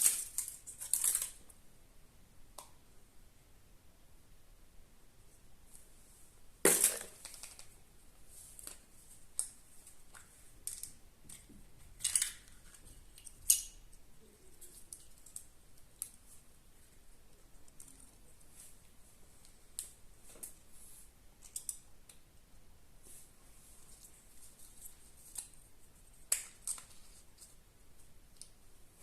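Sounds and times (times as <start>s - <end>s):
foil wrapping crinkling: 0.0s - 1.4s.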